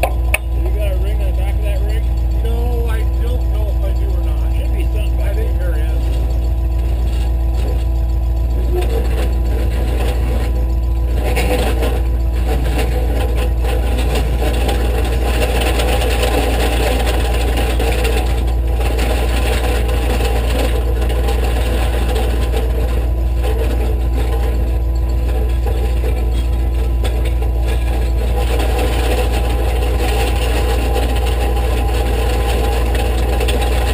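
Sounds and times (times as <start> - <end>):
engine low rumble: 0.0 - 33.9.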